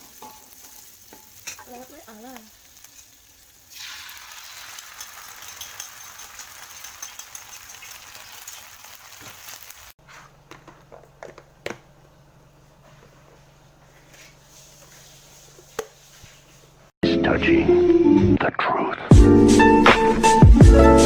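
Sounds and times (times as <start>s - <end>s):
food sizzling in hot oil: 0.0s - 10.0s, 14.2s - 16.8s.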